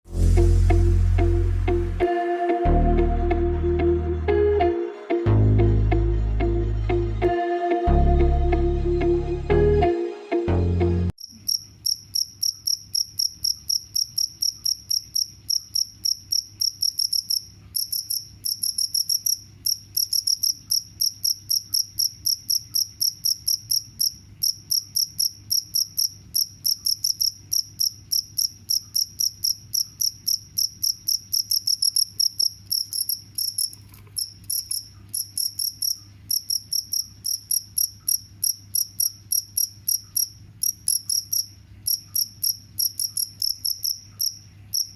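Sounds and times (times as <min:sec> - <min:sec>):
cricket chirping: 0:11.2 - 0:44.9.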